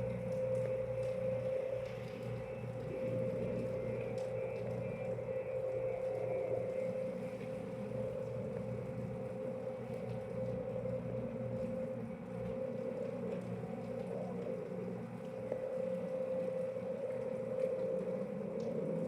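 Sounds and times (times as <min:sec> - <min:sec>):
machine hum with whine: 0:00.0 - 0:19.0.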